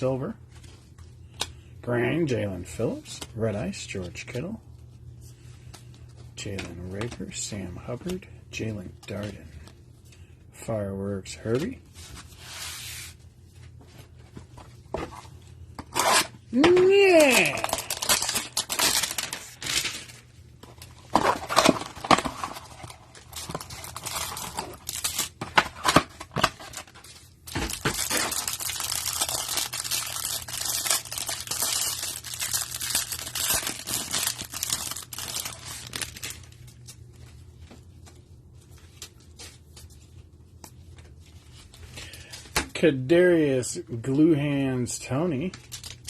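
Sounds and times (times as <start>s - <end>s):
handling of cards: 11.5s - 42.6s
cardboard and plastic ripping: 15.8s - 36.8s.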